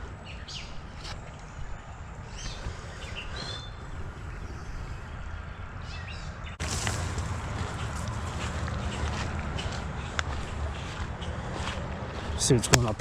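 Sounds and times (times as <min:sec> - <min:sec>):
steady low rumble: 0:00.0 - 0:13.0
bird chirps: 0:00.2 - 0:06.7.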